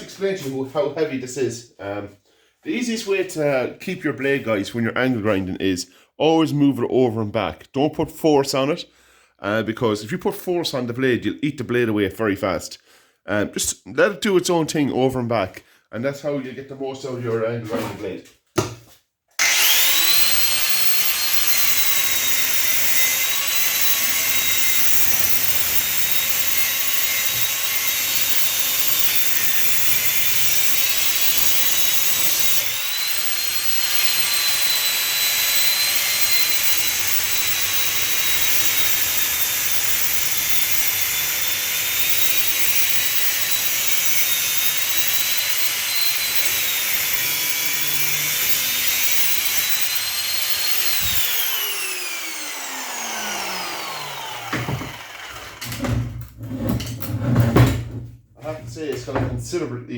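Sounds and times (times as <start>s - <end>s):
angle grinder cutting metal: 19.4s - 55.9s.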